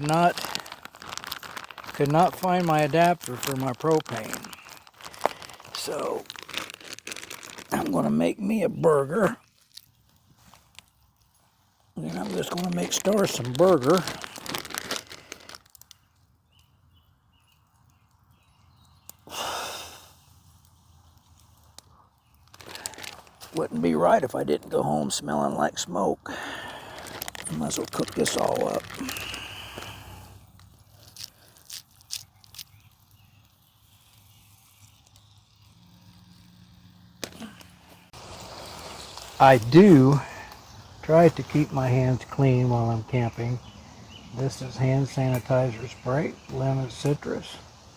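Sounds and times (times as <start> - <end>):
faint crinkles and clicks: 0.0 - 8.0, 9.4 - 19.2, 20.5 - 23.8, 26.7 - 41.7
breathy exhale: 26.3 - 27.2, 29.0 - 30.4.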